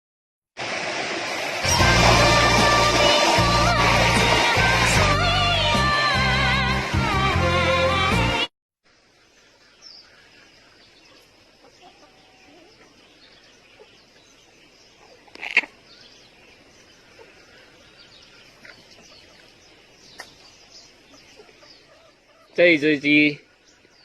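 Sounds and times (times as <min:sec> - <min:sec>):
chickens chirping and calling: 0:09.9 - 0:24.0.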